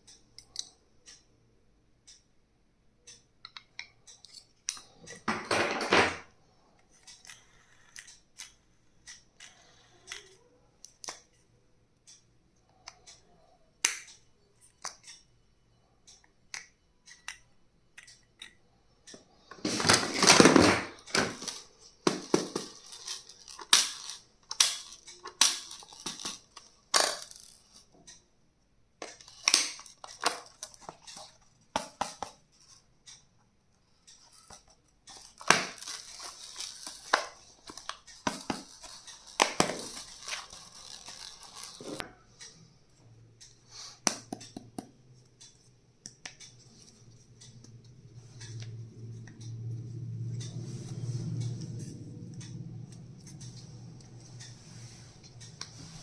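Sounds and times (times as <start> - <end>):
packaging rustling: 35.3 - 42.0
sharp clicks and taps: 43.4 - 49.6.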